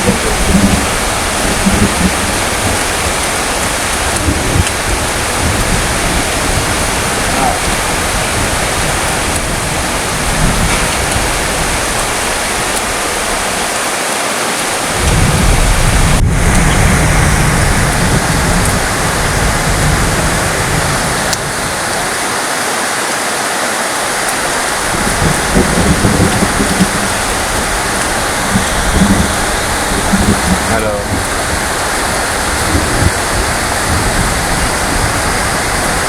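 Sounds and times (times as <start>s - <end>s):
low thunder rumble: 0.0s - 13.7s, 14.9s - 22.2s, 24.3s - 36.0s
heavy rain falling: 0.0s - 36.0s.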